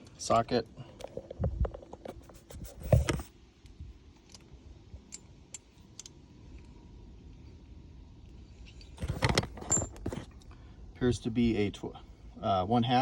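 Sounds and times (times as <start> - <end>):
metal socket clicks: 5.1 - 6.2.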